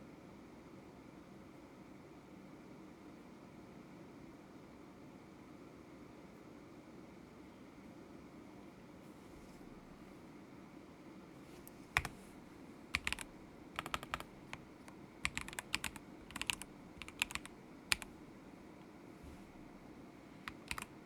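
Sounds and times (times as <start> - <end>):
typing on mechanical keyboard: 12.0 - 12.2, 12.9 - 14.6, 15.2 - 18.2, 20.4 - 21.0.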